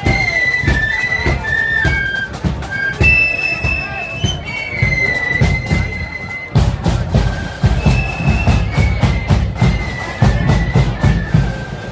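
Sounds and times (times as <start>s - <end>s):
drums beating: 0.0s - 11.9s
flutes playing melody: 0.0s - 11.9s.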